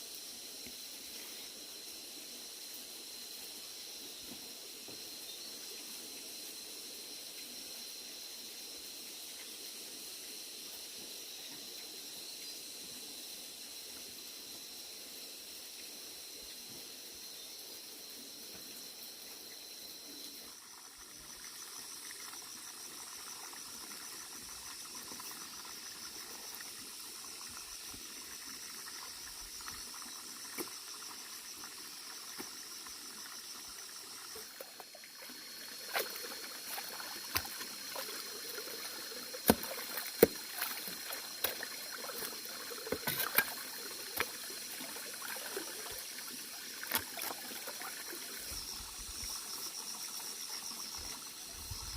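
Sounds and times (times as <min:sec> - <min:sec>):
high-pitched insect drone: 0:18.9 - 0:51.9
water trickling and splashing: 0:20.4 - 0:51.9.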